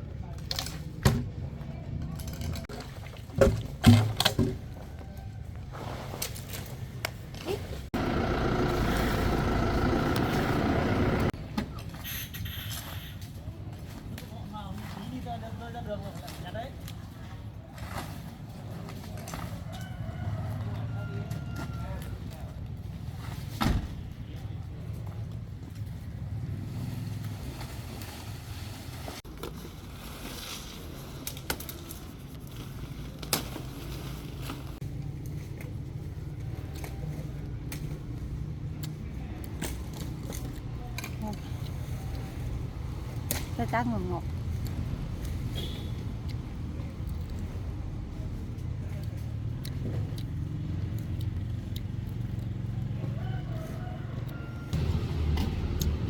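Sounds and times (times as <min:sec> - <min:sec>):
heavy machine engine running: 0:08.0 - 0:11.4, 0:54.8 - 0:56.0.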